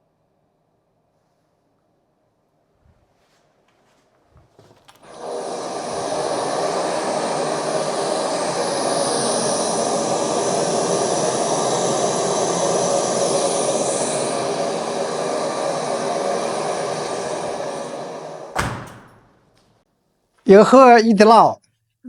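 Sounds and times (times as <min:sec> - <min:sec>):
loud steady machine noise: 0:05.0 - 0:19.3
hum: 0:05.0 - 0:19.8.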